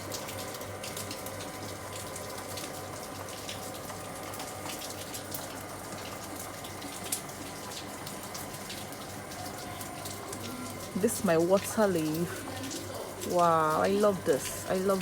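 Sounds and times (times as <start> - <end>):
heavy rain falling: 9.0 - 15.0.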